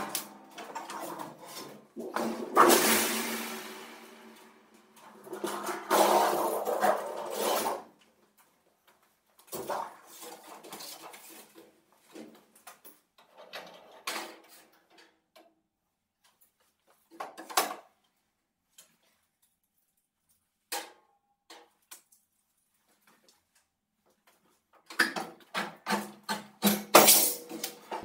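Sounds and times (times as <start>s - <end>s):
metal rattling and scraping: 0.0s - 7.9s.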